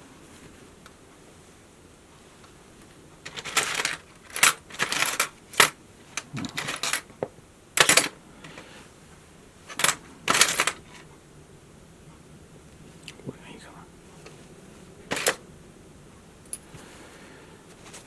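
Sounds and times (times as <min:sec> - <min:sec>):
small metal parts clinking: 0:03.2 - 0:07.1, 0:07.8 - 0:08.6, 0:09.7 - 0:11.0, 0:15.1 - 0:15.4, 0:16.5 - 0:16.7.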